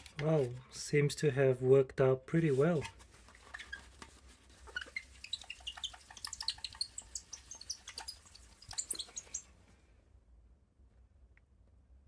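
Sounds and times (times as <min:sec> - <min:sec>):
cloth squeaking on glossy panel: 0:02.8 - 0:09.6.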